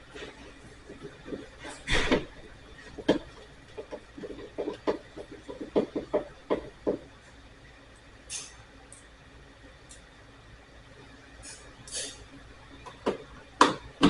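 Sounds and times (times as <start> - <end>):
tools and electrical parts knocking: 3.0 - 7.1.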